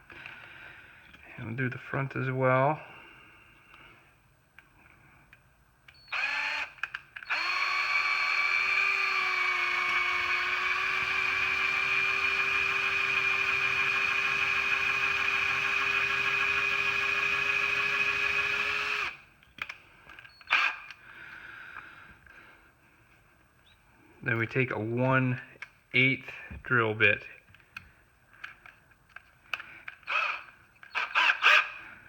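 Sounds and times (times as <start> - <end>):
power drill whining: 5.9 - 21.1, 29.5 - 32.0.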